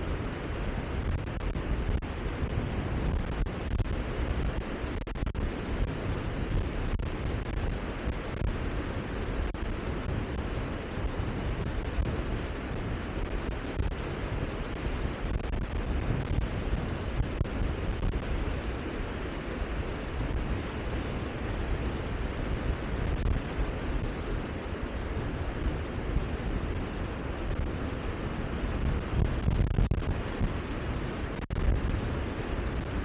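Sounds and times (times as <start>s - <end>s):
wind noise on microphone: 0.0s - 33.0s.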